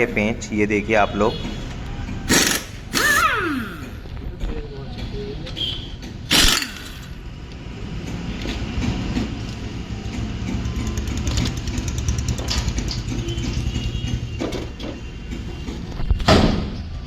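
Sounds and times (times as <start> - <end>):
pneumatic impact wrench: 2.3 - 4.1, 6.2 - 7.2.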